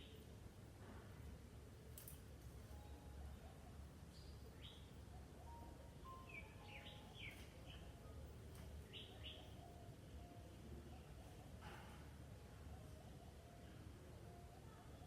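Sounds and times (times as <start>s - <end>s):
songbirds chirping: 2.1s - 11.6s.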